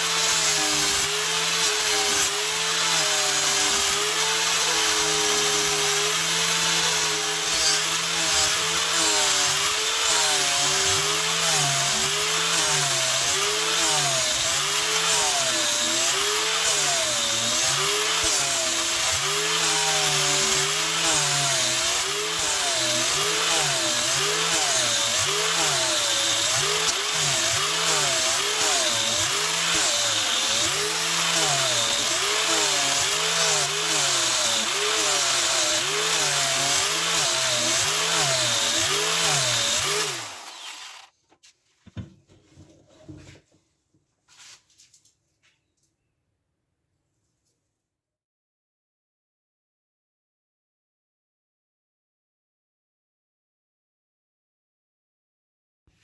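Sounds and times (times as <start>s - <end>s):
electric grinder running: 0.0s - 41.1s.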